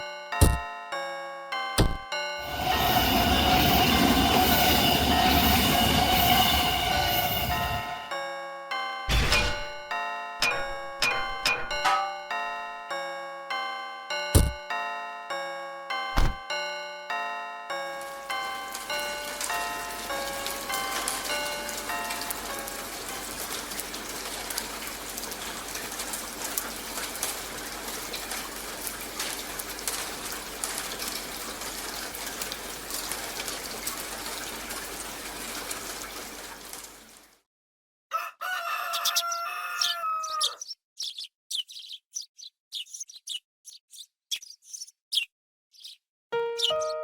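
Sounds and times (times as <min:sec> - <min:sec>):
rooster crowing: 0:38.1 - 0:40.6.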